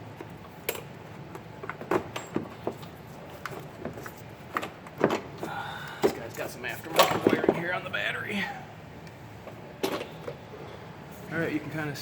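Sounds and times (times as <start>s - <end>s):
clicks and knocks of handled parts: 0.1s - 7.6s.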